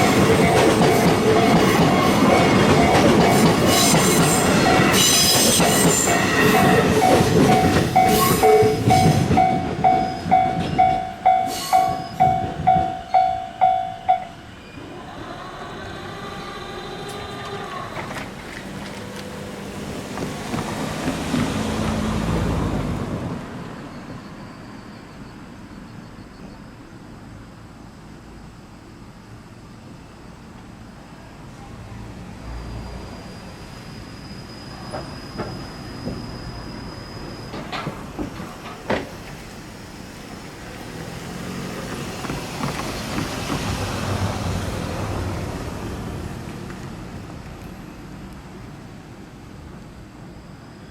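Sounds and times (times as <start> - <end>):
wheels clicking over rails: 0.0 - 14.2
train motor hum: 5.6 - 23.0.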